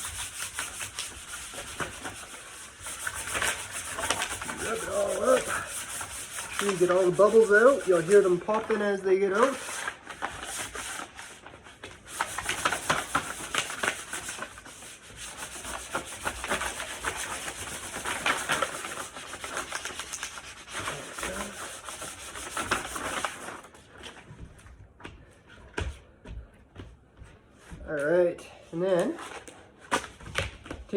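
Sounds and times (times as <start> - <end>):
gritty scraping of griptape: 0.0 - 8.8, 15.3 - 23.6.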